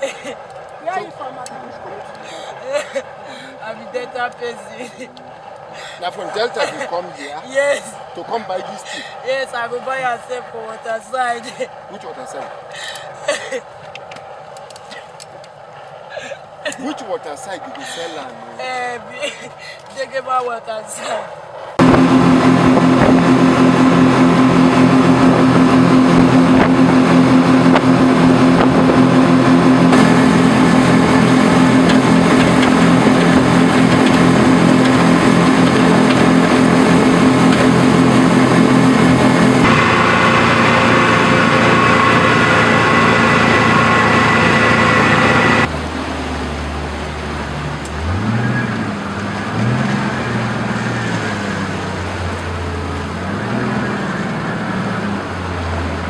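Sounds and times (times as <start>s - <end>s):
loud engines running: 0.0s - 18.6s, 21.4s - 56.0s
engine revving: 21.8s - 56.0s.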